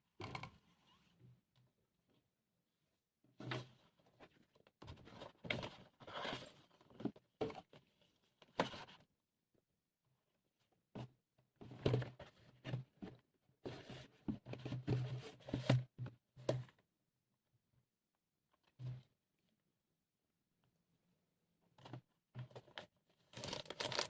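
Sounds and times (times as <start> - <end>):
record sleeves rustling and scraping: 23.3 - 24.0.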